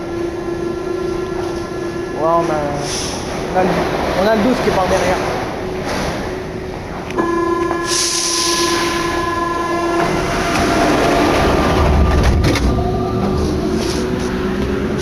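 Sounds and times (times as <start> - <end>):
train warning tone: 0.0 - 3.3, 7.1 - 14.5
train running rumble: 0.0 - 15.0
hiss: 2.8 - 3.4, 7.9 - 9.2.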